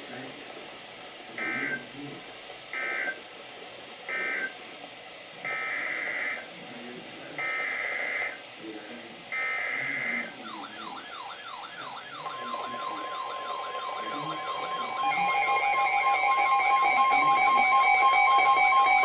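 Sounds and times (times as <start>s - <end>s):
steady electronic tones: 10.0s - 19.0s
falling siren-like sweep: 10.4s - 19.0s.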